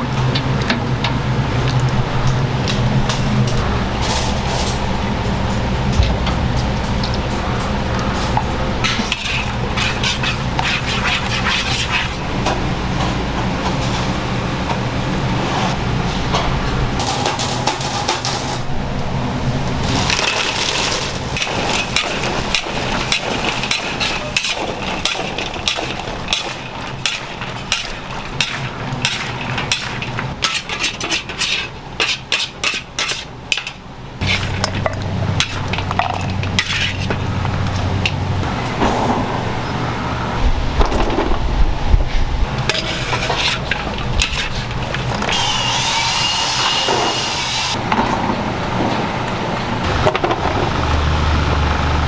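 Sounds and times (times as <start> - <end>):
steady low hum: 0.0 - 17.6.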